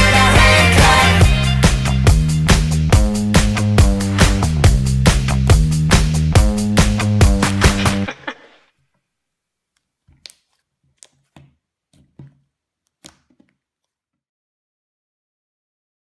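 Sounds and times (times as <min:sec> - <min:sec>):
pop music with steady beat: 0:00.0 - 0:08.4.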